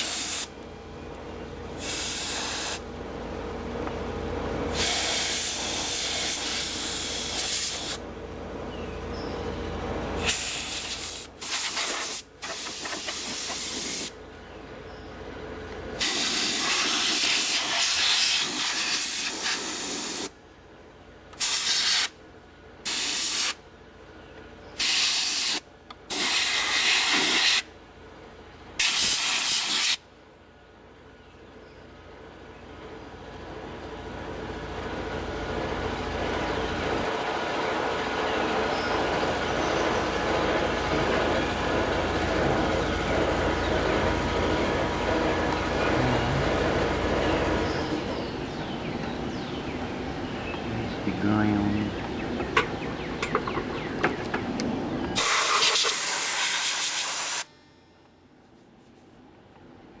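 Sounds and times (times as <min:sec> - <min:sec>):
air blow gun hissing: 0:00.0 - 0:00.5, 0:01.8 - 0:02.8, 0:04.7 - 0:08.0, 0:10.2 - 0:14.2, 0:16.0 - 0:20.3, 0:21.4 - 0:22.1, 0:22.8 - 0:23.6, 0:24.8 - 0:27.7, 0:28.8 - 0:30.0, 0:55.2 - 0:57.5
low hum: 0:30.1 - 0:55.2.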